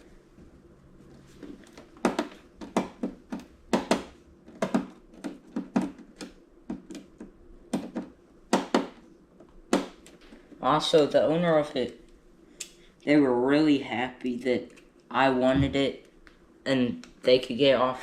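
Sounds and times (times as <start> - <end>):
knocks and clicks of hard objects: 1.7 - 10.4.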